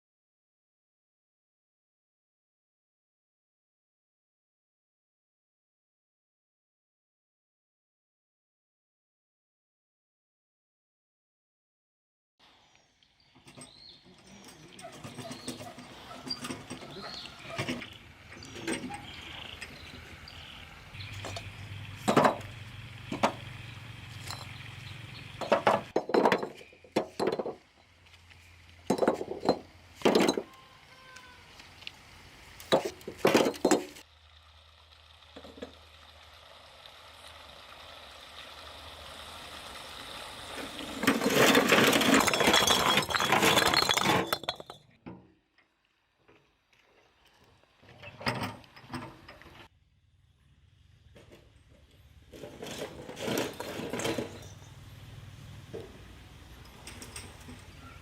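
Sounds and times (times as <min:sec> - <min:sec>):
hard objects clinking: 0:24.2 - 0:24.7, 0:28.8 - 0:30.6, 0:32.7 - 0:34.0, 0:41.0 - 0:45.0, 0:56.6 - 0:58.0
dense rattling: 0:41.0 - 0:44.9.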